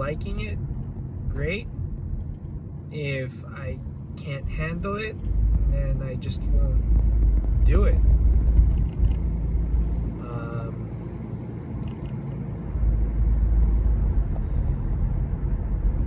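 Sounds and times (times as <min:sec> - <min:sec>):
low rumble of moving vehicle: 0:00.0 - 0:16.0.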